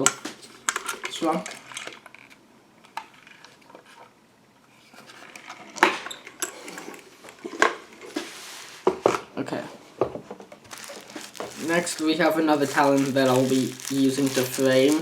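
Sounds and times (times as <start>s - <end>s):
small hard objects clicking: 10.7s - 15.0s.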